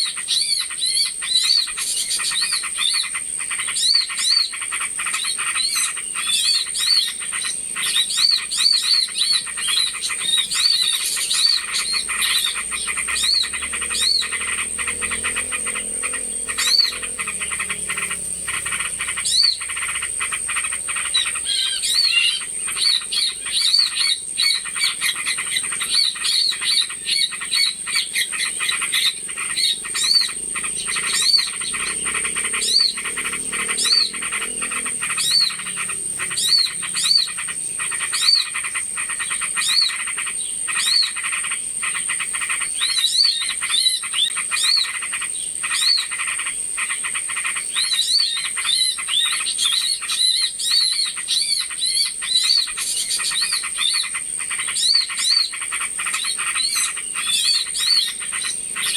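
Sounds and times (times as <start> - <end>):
short arching bird chirps: 0.0 - 58.9
high-pitched whine: 10.5 - 23.1.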